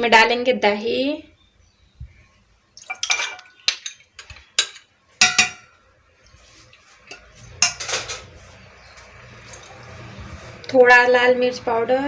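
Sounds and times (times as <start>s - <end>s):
spoon clinking against a bowl: 2.9s - 5.8s, 7.1s - 8.0s.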